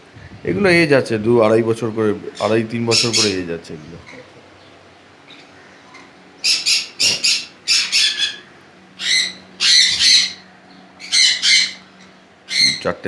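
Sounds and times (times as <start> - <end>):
parrots squawking: 2.3 - 4.5, 5.2 - 13.0.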